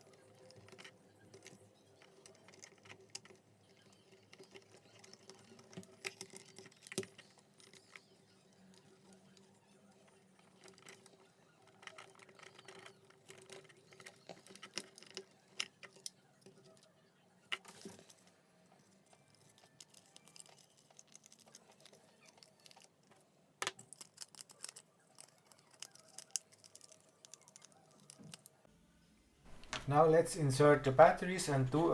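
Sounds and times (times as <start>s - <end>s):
plastic parts clicking: 10.4s - 16.9s, 19.0s - 28.6s.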